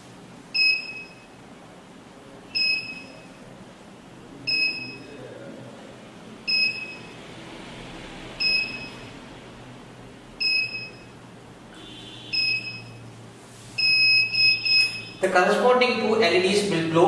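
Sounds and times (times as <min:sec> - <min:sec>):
alarm panel buzzer beeps: 0:00.6 - 0:01.4, 0:02.6 - 0:03.4, 0:04.5 - 0:05.0, 0:06.5 - 0:07.2, 0:08.4 - 0:09.1, 0:10.4 - 0:13.0, 0:13.8 - 0:15.2.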